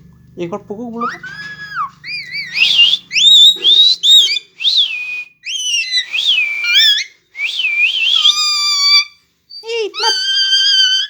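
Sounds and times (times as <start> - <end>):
parrot whistling calls: 1.0 - 11.0.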